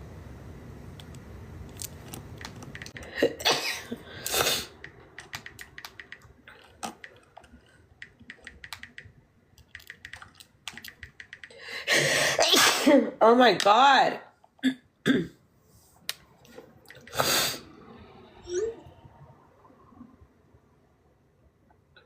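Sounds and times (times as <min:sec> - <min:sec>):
woman sneezing: 0:03.2 - 0:04.7, 0:12.2 - 0:13.2.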